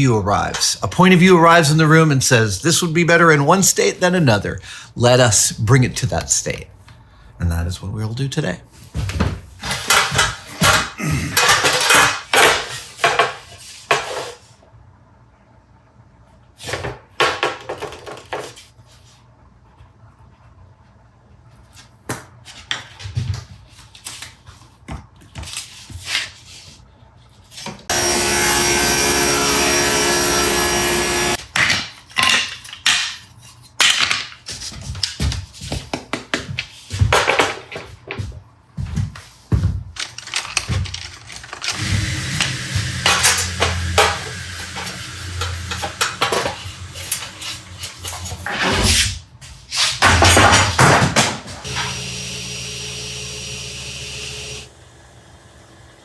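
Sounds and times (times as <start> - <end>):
power tool running: 27.9 - 31.4, 41.7 - 48.0, 51.6 - 56.0.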